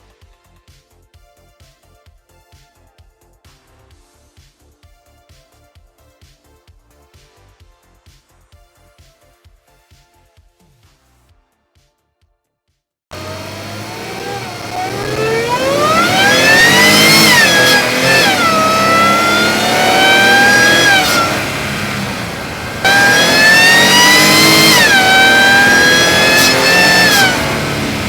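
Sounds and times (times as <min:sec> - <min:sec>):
car engine accelerating hard: 0:13.1 - 0:28.0
supercharger whine: 0:13.1 - 0:28.0.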